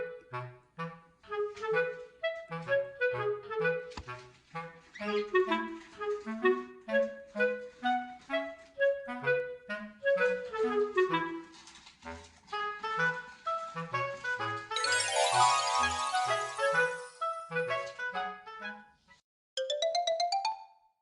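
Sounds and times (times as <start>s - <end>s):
reedy woodwind tune: 0.8s - 11.6s, 12.9s - 18.7s.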